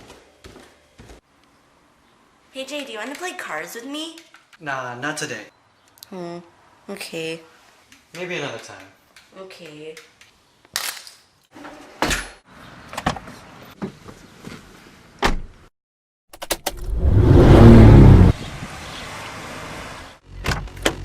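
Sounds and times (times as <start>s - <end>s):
car engine starting and running: 16.4s - 18.5s.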